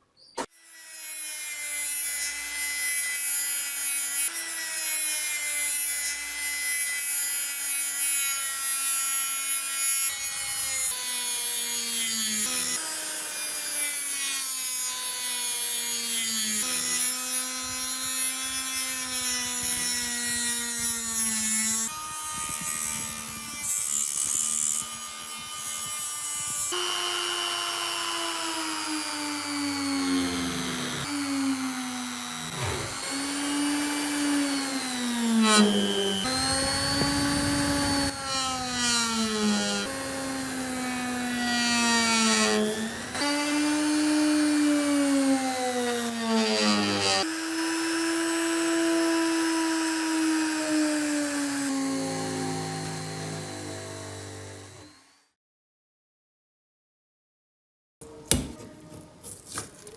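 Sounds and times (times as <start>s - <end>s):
electric power tool motor whining: 16.4s - 55.3s.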